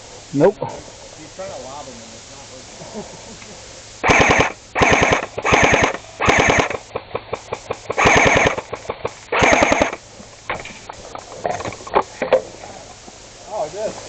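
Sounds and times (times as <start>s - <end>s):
airsoft gun full-auto bursts: 4.0s - 10.0s
airsoft gun single shots: 4.0s - 10.0s.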